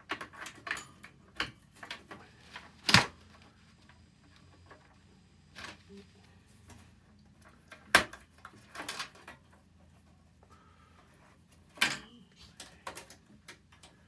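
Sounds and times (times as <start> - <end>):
clicks and knocks of computer parts: 0.0 - 3.4, 7.4 - 9.7, 11.5 - 14.0.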